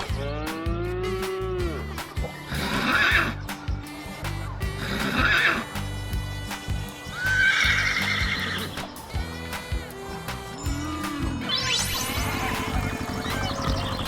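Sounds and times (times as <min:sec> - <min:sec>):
background music: 0:00.0 - 0:14.0
horse neighing: 0:07.2 - 0:08.7.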